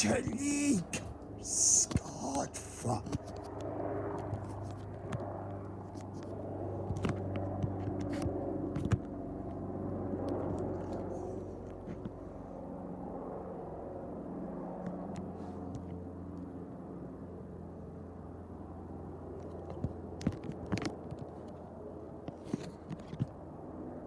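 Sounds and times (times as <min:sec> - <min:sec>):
helicopter flying past: 0:03.2 - 0:15.1.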